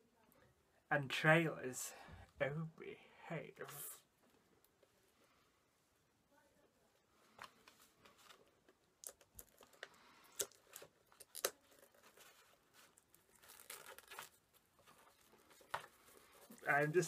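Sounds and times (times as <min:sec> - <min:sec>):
packaging crinkling and tearing: 0:09.0 - 0:16.6.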